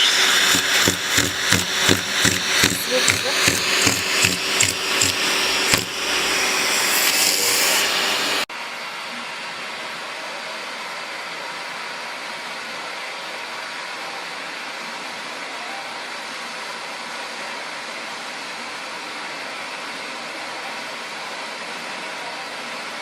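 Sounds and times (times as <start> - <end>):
vacuum cleaner running: 0.0 - 9.1
knock: 0.4 - 6.0.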